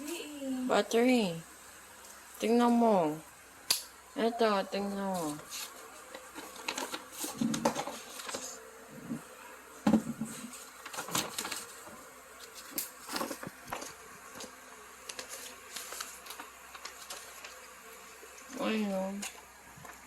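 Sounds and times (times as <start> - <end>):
faint steady hum: 0.0 - 20.0
hands handling plastic items: 5.1 - 9.2, 9.9 - 17.7.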